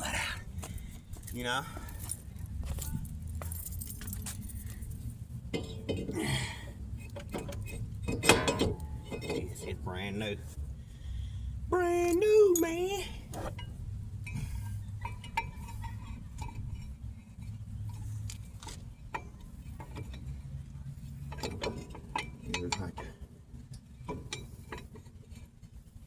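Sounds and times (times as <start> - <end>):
steady low rumble: 0.0 - 24.8
metal parts clinking: 12.0 - 13.5.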